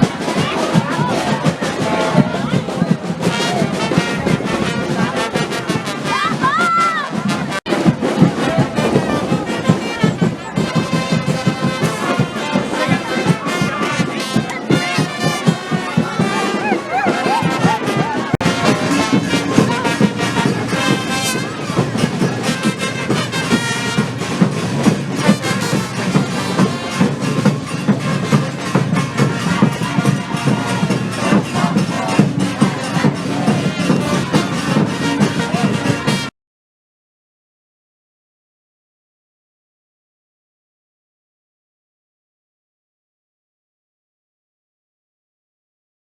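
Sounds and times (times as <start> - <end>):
brass band playing: 0.0 - 36.3
steady drum beat: 0.0 - 36.3.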